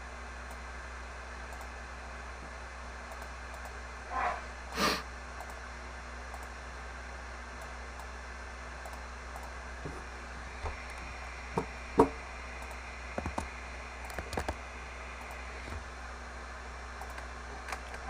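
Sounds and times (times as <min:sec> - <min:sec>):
low electrical hum and hiss: 0:00.0 - 0:18.0
breath noises close to microphone: 0:04.7 - 0:05.0.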